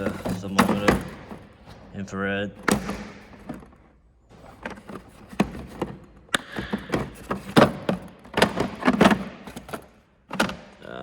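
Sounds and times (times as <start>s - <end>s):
hand tools clicking in drawer: 0.0s - 1.4s.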